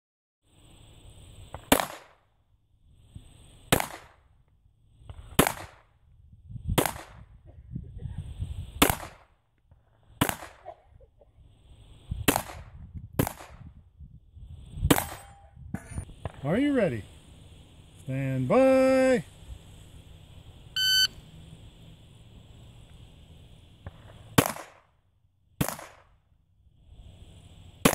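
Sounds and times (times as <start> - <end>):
pistol shots: 1.7 - 2.2, 3.7 - 4.1, 24.4 - 24.8, 25.6 - 26.0.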